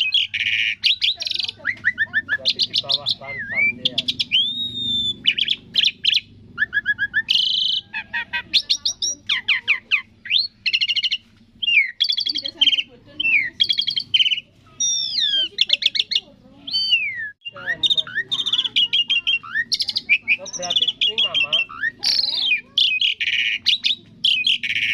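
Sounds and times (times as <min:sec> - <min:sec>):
starling singing: 0:00.0 - 0:24.9.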